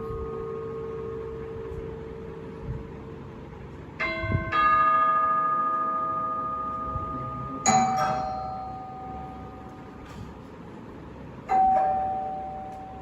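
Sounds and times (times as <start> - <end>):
bell chime ringing: 4.0 - 10.0.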